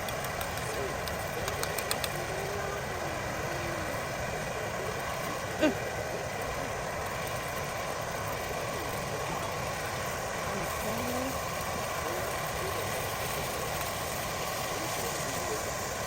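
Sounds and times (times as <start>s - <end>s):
steady whirring hum: 0.0s - 16.0s.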